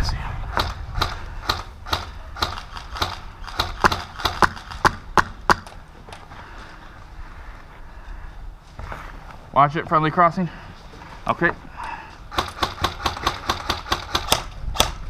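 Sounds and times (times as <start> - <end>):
airsoft rifle shots clicking: 0.6 - 5.8, 12.3 - 15.0.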